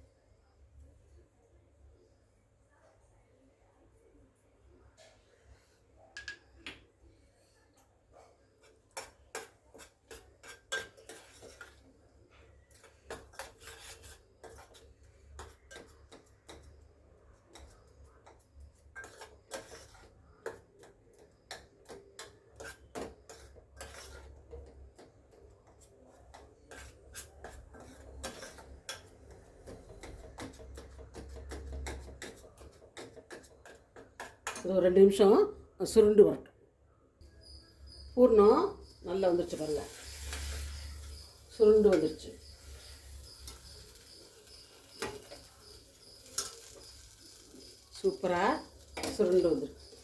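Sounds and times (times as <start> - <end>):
metal spoon scraping a pan: 8.6 - 16.9, 17.5 - 34.8, 37.4 - 50.0.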